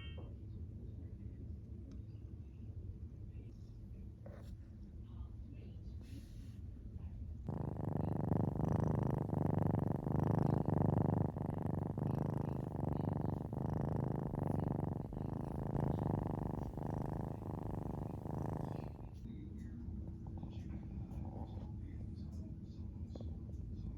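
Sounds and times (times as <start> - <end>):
cat purring loudly: 7.5 - 19.2.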